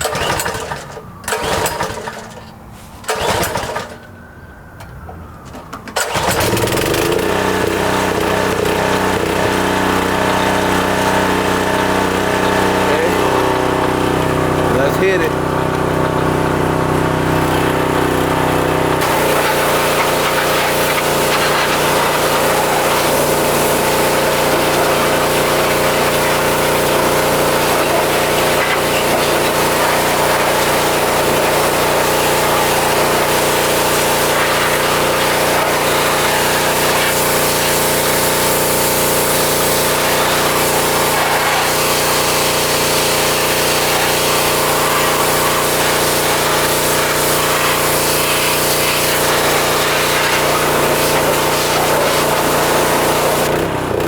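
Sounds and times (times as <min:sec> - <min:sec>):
pressure washer engine running: 0:00.0 - 0:04.1, 0:05.9 - 0:54.0
high-pressure water jet hissing: 0:07.6 - 0:15.3, 0:19.0 - 0:53.7.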